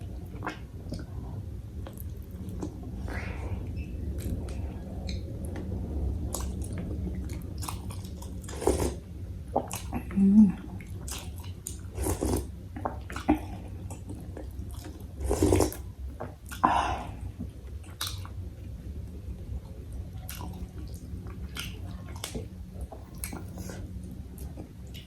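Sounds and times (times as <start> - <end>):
slurping soup: 8.4 - 9.0, 11.9 - 12.5, 15.2 - 15.8.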